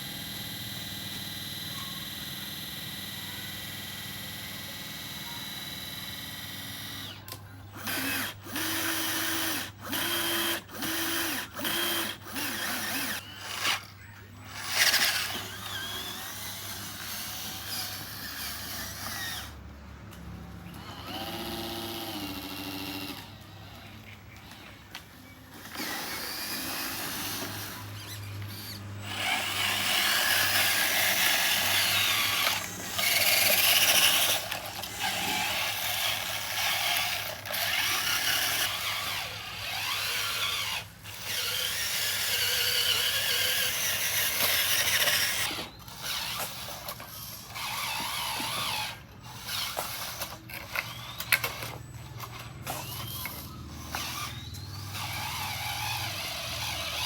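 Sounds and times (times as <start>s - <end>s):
small electric motors whirring: 0.0s - 57.0s.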